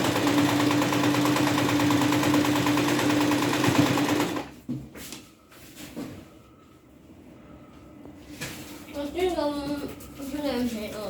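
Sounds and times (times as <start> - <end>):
electric sewing machine stitching: 0.0 - 4.5.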